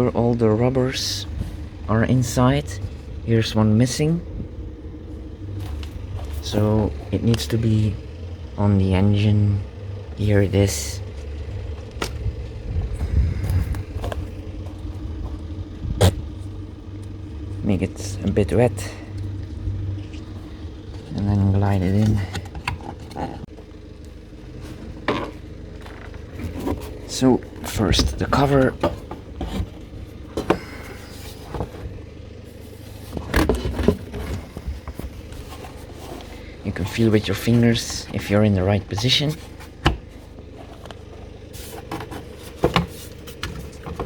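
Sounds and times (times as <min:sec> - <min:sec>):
low rumble: 0:00.0 - 0:39.4.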